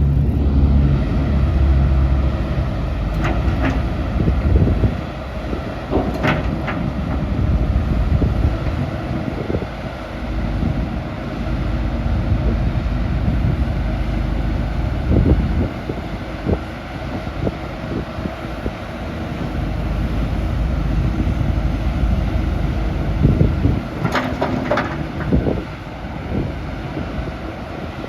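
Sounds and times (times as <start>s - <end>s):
excavator diesel engine running: 0.0s - 28.0s
wind buffeting microphone: 0.0s - 28.0s
short knocks: 3.1s - 4.1s, 5.8s - 7.5s, 23.6s - 25.6s.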